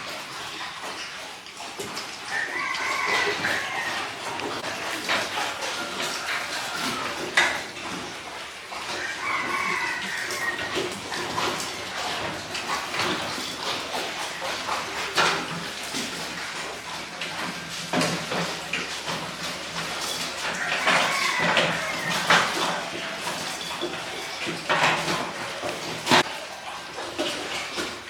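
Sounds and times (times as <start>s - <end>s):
pigs squealing and grunting: 0.0s - 28.0s.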